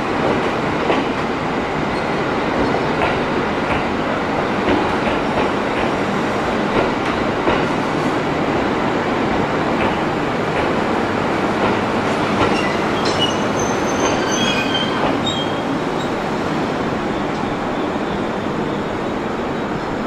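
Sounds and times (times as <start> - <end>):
train rolling along track: 0.0 - 20.0
high-pitched wheel squeals: 12.6 - 16.2.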